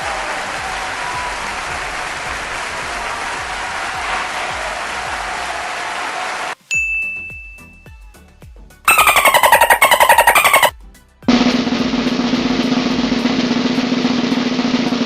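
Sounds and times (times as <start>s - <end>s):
crowd applause: 0.0s - 6.6s
bell-like ding: 6.7s - 7.9s.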